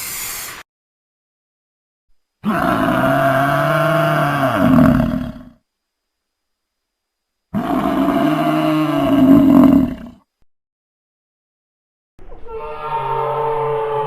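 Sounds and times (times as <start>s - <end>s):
dinosaur roar: 2.4s - 5.6s, 7.6s - 10.2s.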